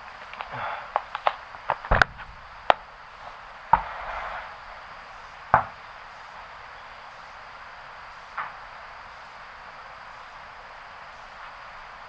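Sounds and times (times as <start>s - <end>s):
sharp knocks: 1.0s - 2.8s.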